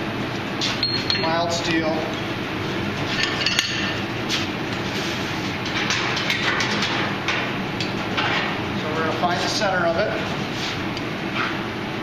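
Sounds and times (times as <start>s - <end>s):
steady mechanical rumble: 0.0s - 12.0s
metallic ring: 0.8s - 1.3s.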